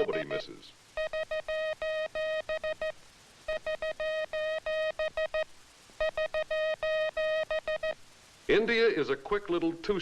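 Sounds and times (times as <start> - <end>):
morse code tone: 0.0 - 2.9, 3.5 - 5.4, 6.0 - 8.0.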